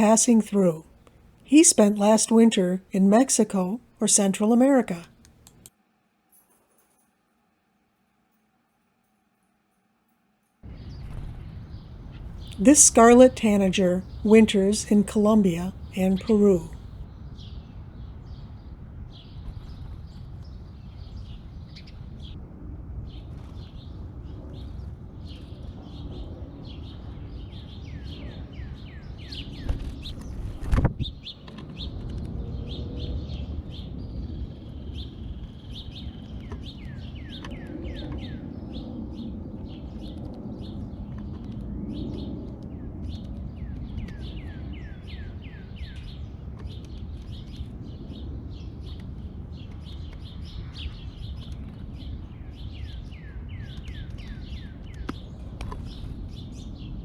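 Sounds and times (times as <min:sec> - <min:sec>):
songbirds chirping: 0:12.4 - 0:16.8.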